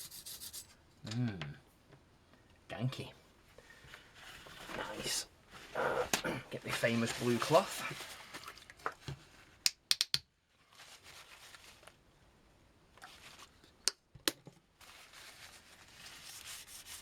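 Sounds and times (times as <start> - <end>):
cloth rubbing on plastic case: 4.1 - 8.1.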